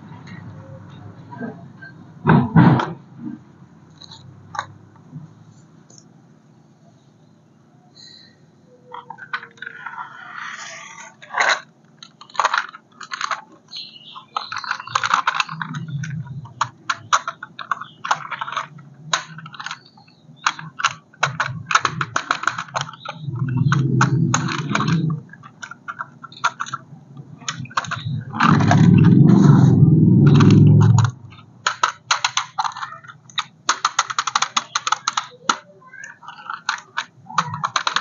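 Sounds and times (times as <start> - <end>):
plastic parts clicking and rattling: 3.9 - 5.2, 8.8 - 10.0, 10.6 - 38.0
low hum: 23.1 - 25.7, 26.9 - 31.4.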